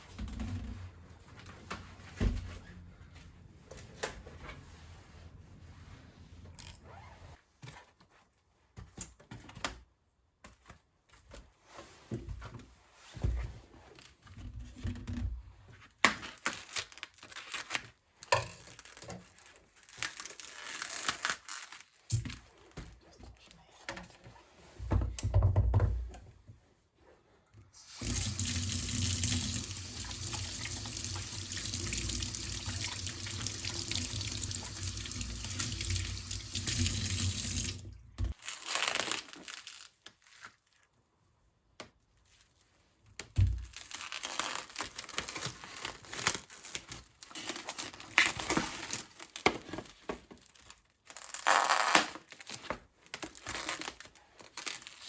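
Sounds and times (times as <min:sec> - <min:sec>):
kitchen tap running: 0:27.8 - 0:38.3.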